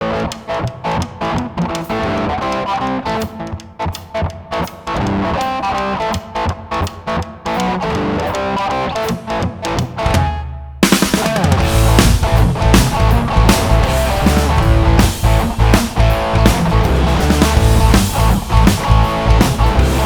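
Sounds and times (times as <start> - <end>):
electric guitar: 0.0 - 20.0
drum beat: 9.2 - 20.0.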